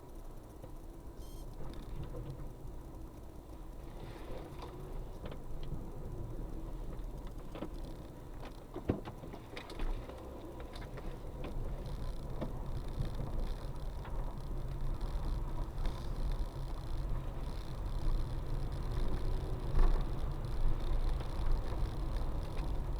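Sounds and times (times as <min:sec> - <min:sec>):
car road and engine rumble: 0:00.0 - 0:22.9.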